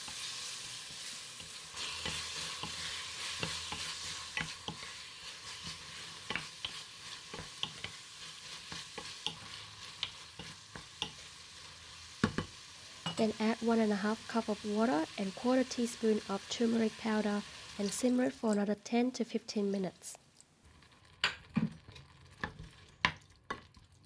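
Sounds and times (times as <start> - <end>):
food sizzling in oil: 0.0 - 18.8, 20.6 - 24.0
utensil clicking against pan: 3.4 - 4.9, 6.2 - 8.0, 8.7 - 11.2.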